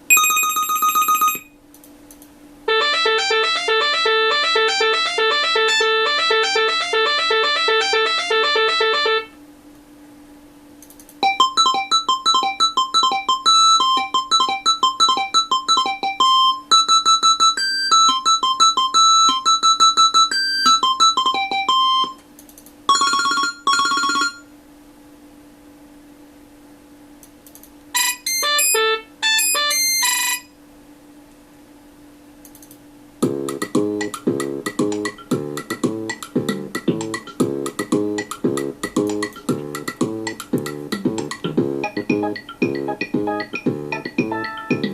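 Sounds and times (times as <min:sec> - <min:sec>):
faint steady hum: 0:00.0 - 0:44.9
electronic ringtone melody: 0:00.1 - 0:01.5, 0:02.7 - 0:09.3, 0:11.2 - 0:22.2, 0:22.9 - 0:24.4, 0:28.0 - 0:30.5, 0:33.3 - 0:44.9.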